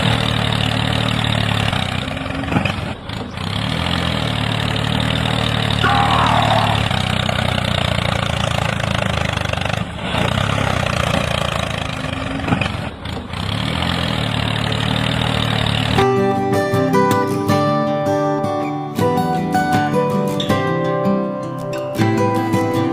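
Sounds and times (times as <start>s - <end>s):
tractor engine idling: 0.0s - 17.9s.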